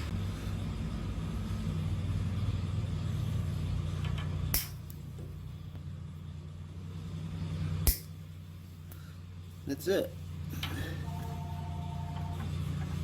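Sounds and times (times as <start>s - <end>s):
small engine humming: 5.1s - 13.0s
sharp snip: 7.8s - 8.1s.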